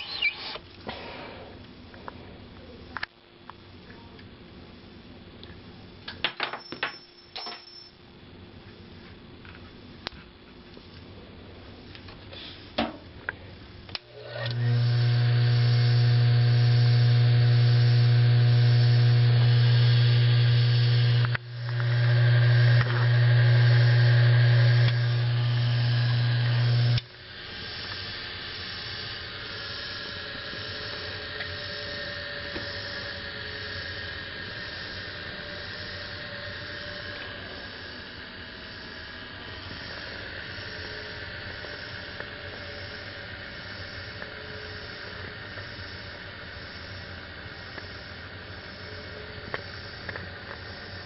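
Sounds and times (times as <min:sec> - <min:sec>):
loud low electric hum: 0:08.0 - 0:51.0
electric motor running: 0:14.0 - 0:46.0.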